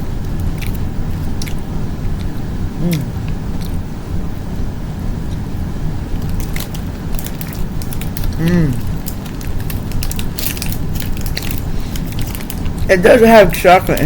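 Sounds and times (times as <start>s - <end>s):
person chewing snack: 0.0s - 3.8s, 6.2s - 12.9s
person humming: 2.8s - 3.3s, 8.3s - 8.9s
crackling clicks: 6.2s - 12.9s.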